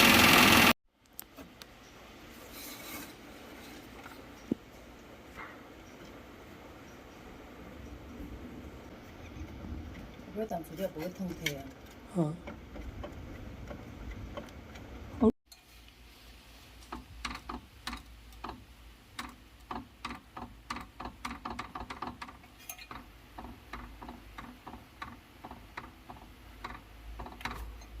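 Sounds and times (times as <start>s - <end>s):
cooling fan motor clicking and knocking: 0.0s - 1.6s, 8.9s - 15.2s, 16.8s - 28.0s.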